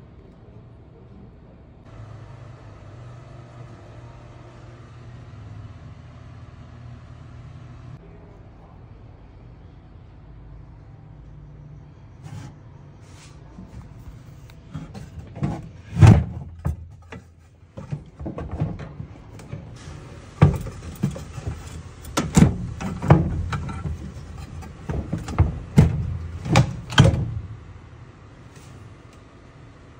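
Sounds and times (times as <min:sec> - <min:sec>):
knocks and thumps on metal: 0:20.4 - 0:27.5.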